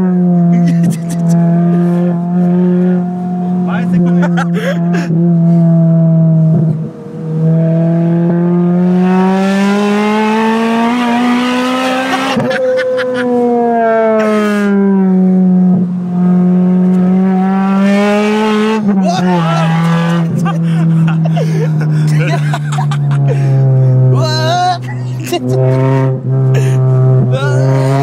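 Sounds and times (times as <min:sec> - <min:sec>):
car engine revving: 0:00.0 - 0:28.0.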